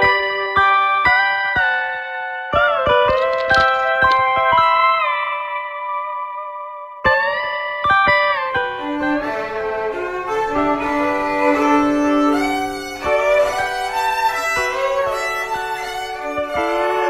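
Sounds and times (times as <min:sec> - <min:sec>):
violin melody: 0:08.2 - 0:17.0.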